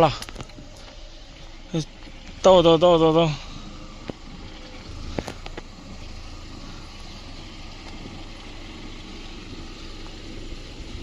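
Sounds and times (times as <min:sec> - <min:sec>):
vehicle engine and road noise: 0:00.0 - 0:11.0.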